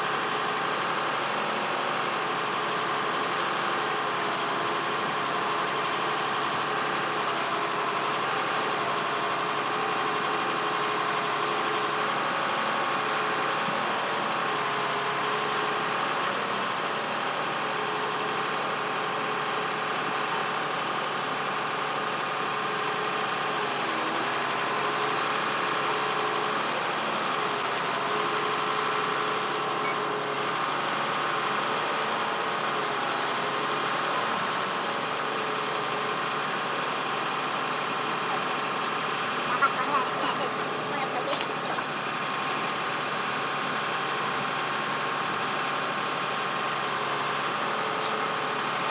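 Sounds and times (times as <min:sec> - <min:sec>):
heavy machinery engine running: 0:00.0 - 0:48.9.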